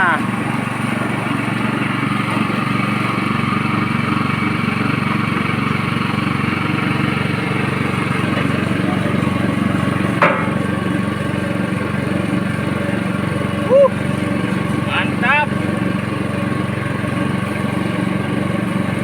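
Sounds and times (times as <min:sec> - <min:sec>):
press machine motor drone: 0:00.0 - 0:19.0.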